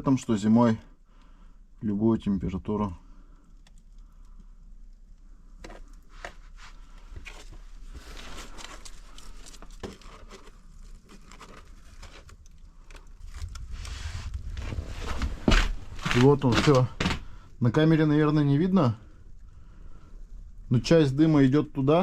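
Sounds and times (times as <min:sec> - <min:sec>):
sharp clicks and crackles: 0:03.2 - 0:06.1, 0:08.5 - 0:17.5
paper and kindling rustling: 0:05.8 - 0:17.4.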